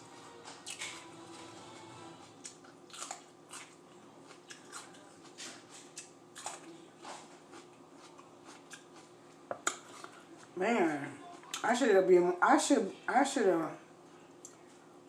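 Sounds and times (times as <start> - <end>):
person chewing crunchy peppers: 0.0 - 10.6.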